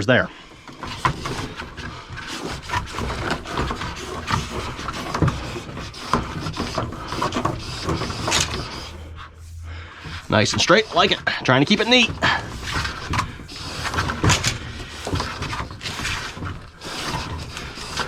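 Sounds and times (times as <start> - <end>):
cable rustling and scraping: 0.0 - 18.0.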